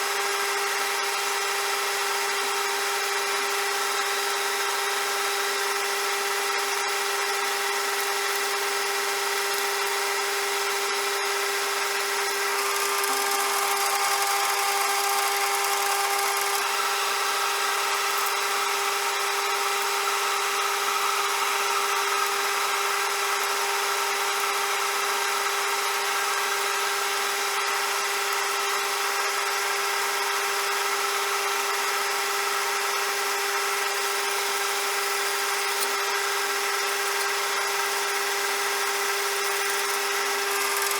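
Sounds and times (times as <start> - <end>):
bench lathe whining: 2.3 - 7.5, 12.0 - 21.6, 39.4 - 40.9.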